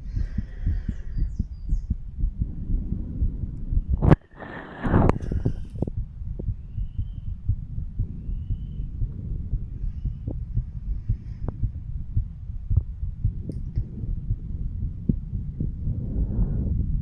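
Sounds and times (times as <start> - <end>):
heartbeat through stethoscope: 0.0 - 17.0
sharp clicks: 13.5 - 13.9.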